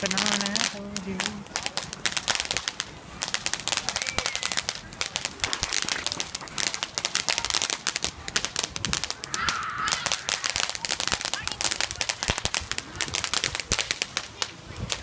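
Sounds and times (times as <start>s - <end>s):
firecrackers crackling and popping: 0.0s - 15.0s.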